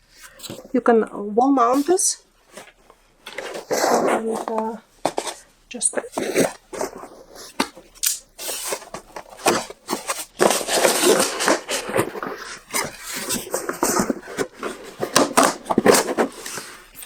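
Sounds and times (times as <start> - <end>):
box packaging rustling and scraping: 0.0 - 0.8, 1.6 - 17.0
clicks and knocks of handling: 6.7 - 17.0.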